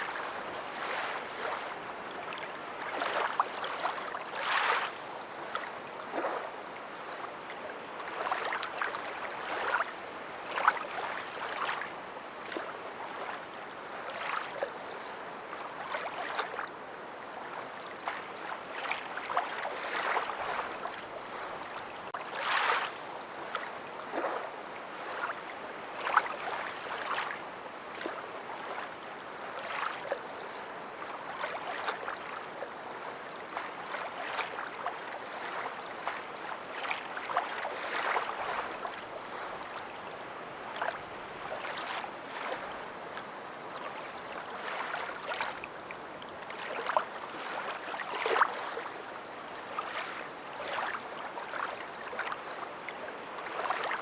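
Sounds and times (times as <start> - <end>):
water lapping: 0.0 - 16.8, 17.4 - 54.0
water splashing: 33.6 - 39.8, 40.7 - 48.9.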